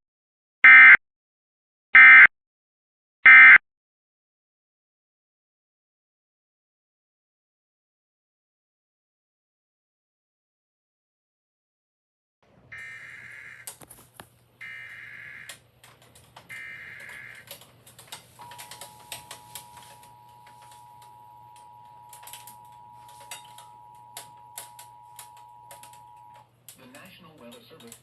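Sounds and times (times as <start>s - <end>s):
buzzy data header bursts: 12.8s - 13.6s, 14.6s - 15.5s
sharp keyboard-like clicks: 15.4s - 19.9s.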